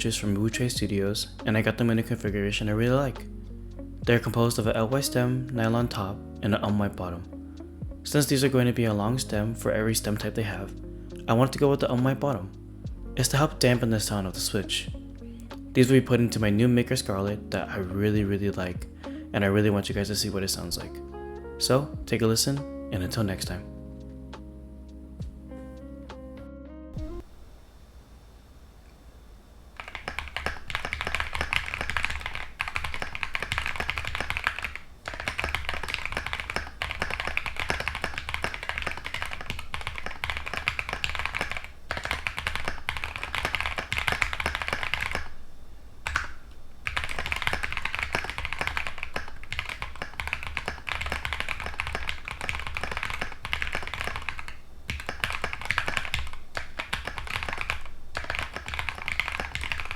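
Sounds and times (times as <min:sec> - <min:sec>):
mechanical keyboard typing: 0:29.8 - 0:45.4, 0:46.0 - 0:59.9.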